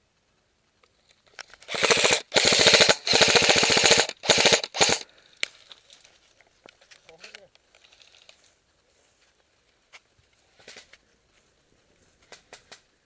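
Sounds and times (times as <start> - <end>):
airsoft gun automatic bursts: 1.6 - 5.1.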